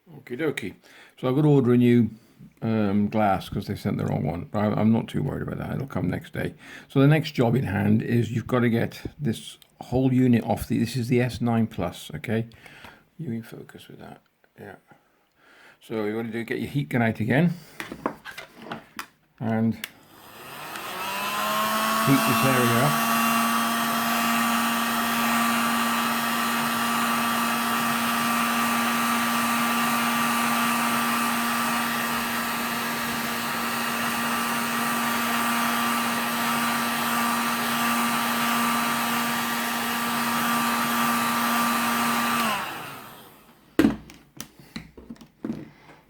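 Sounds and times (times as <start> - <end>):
heat gun blowing: 19.9 - 43.9.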